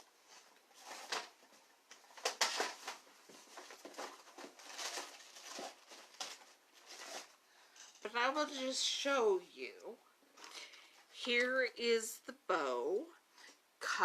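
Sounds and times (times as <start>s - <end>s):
paper rustling: 0.1s - 8.0s.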